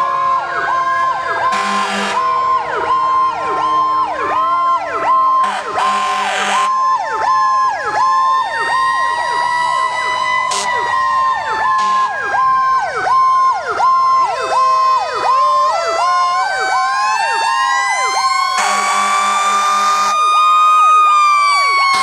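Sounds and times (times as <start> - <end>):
fast cycling siren: 0.0 - 22.0
slow wailing siren: 0.0 - 22.0.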